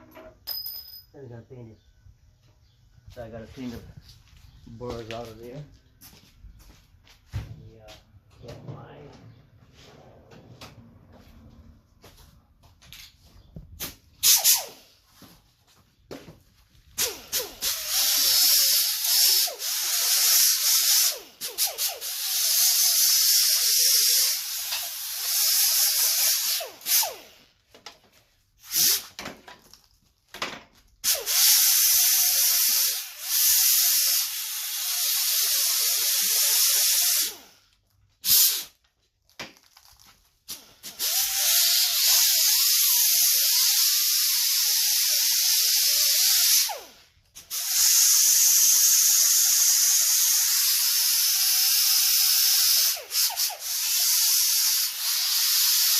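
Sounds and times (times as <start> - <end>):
compressed air tool hissing: 13.8 - 14.8, 17.0 - 27.4, 28.6 - 29.2, 31.0 - 37.6, 38.2 - 38.8, 40.5 - 55.9.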